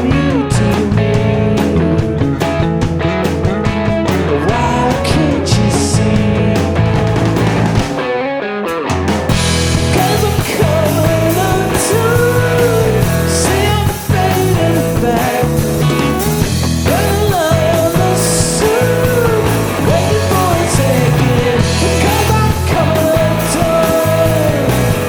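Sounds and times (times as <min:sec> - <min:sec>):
rock band playing live: 0:00.0 - 0:25.0.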